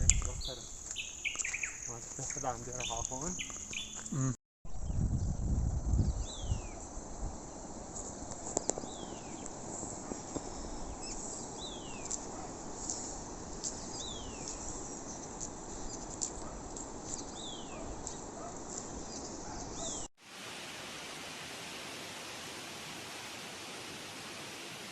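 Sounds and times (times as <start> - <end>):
small bird chirps: 0.0 - 5.0
falling water rush: 20.2 - 24.9
rushing water: 20.2 - 24.9.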